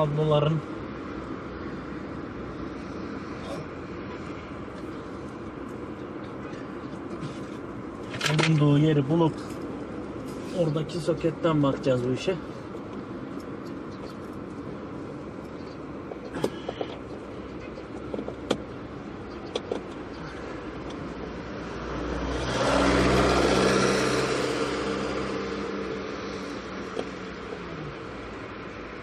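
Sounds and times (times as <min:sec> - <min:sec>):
small clicks and knocks: 0:19.4 - 0:20.0
motor vehicle passing by: 0:21.6 - 0:28.6.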